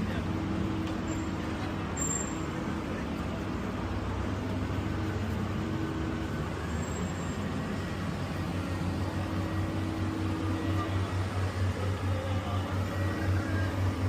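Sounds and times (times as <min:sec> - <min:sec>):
low hum of street noise: 0:00.0 - 0:14.0
faint droning tone: 0:04.9 - 0:14.0.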